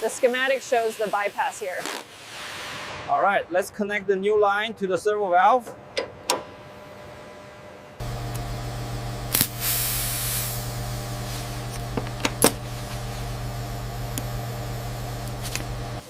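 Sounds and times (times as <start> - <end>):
low electric hum: 3.4 - 16.0.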